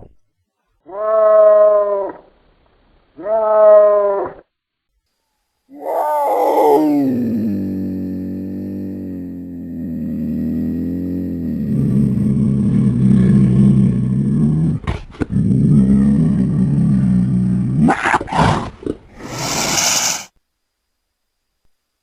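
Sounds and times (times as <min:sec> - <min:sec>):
cougar growling: 0:05.8 - 0:20.3
cougar snarling: 0:05.8 - 0:20.3
cougar hissing: 0:11.7 - 0:20.3.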